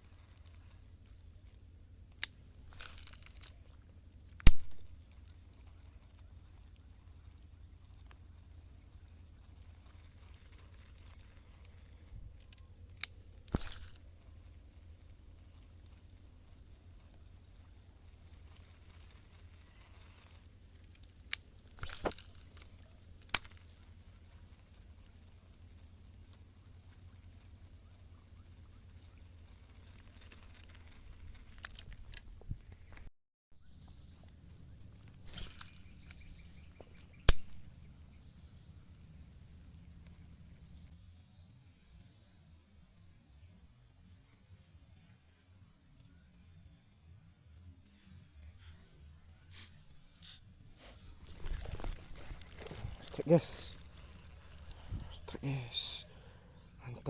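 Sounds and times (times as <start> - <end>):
insects chirring: 0.0 - 57.0
sharp clicks and knocks: 4.4 - 5.0.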